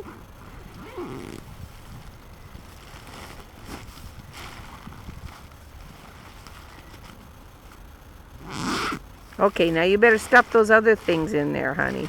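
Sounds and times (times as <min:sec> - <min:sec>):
wind rumble on microphone: 0:00.0 - 0:06.3
tent fabric rustling: 0:00.0 - 0:12.0.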